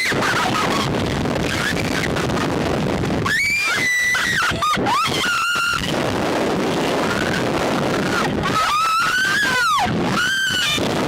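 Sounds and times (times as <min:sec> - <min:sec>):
wind rushing over microphone: 0:00.0 - 0:11.0
woman screaming: 0:03.3 - 0:05.9, 0:07.0 - 0:10.8.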